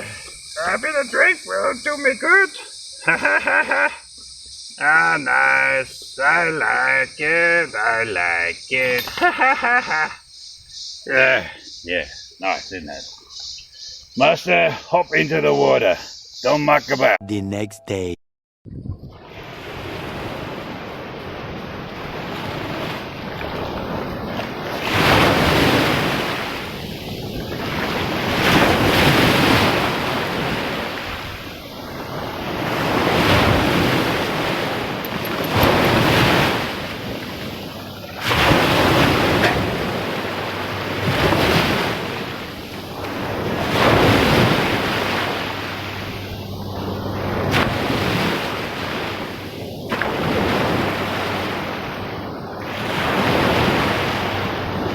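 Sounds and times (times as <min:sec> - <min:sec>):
wind on microphone: 0:18.7 - 0:45.2
surf breaking on a beach: 0:19.2 - 0:54.9.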